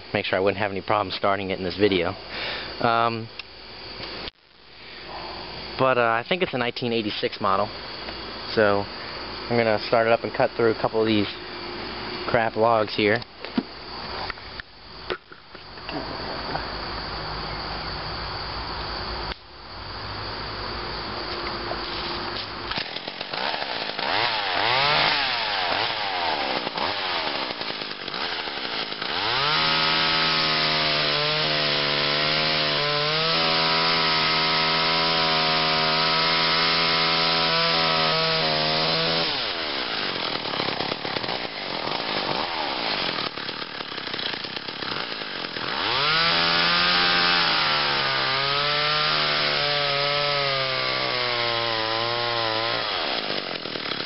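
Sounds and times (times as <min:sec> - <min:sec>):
chainsaw cutting log: 0:21.8 - 0:54.0
chainsaw revving: 0:22.7 - 0:54.0.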